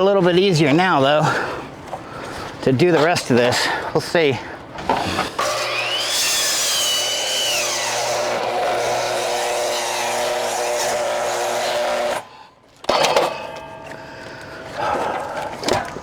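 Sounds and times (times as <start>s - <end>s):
miter saw cutting into log: 5.0s - 12.3s.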